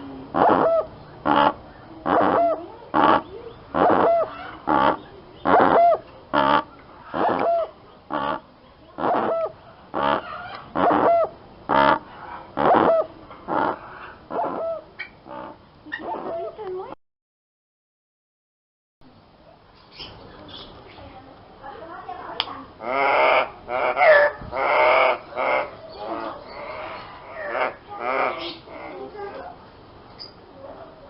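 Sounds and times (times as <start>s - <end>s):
bird calling: 0.0s - 16.7s, 22.8s - 30.4s.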